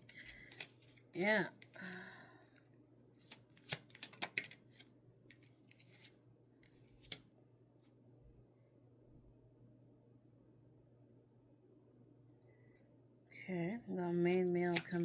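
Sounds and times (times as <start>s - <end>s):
cards clicking and flicking: 0.1s - 1.0s, 3.2s - 4.8s, 7.0s - 7.2s, 14.3s - 15.0s.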